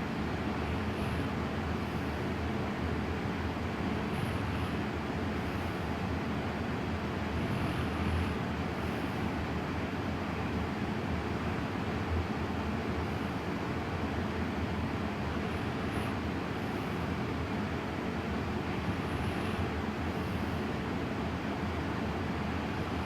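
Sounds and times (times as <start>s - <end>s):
woman breathing slowly in sleep: 3.9s - 6.0s, 7.0s - 9.5s, 15.1s - 17.3s, 18.6s - 20.9s.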